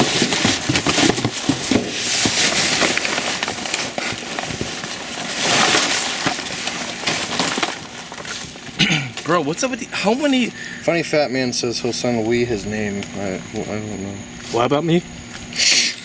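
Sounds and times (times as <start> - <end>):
items clicking and knocking: 0.0 - 9.3
trash rustling and crinkling: 0.0 - 15.6.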